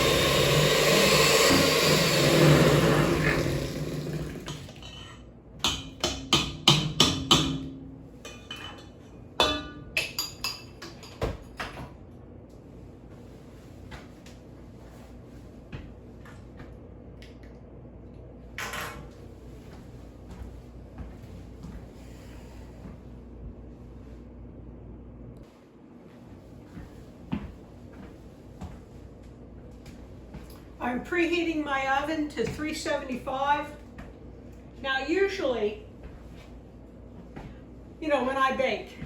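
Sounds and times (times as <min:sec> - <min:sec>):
electric hand mixer motor: 0:00.0 - 0:04.7.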